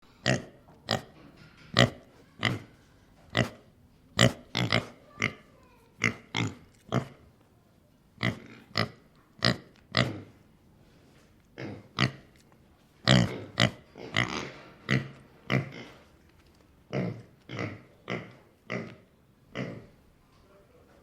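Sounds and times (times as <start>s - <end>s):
pig snorting: 4.2s - 7.2s, 13.0s - 16.1s.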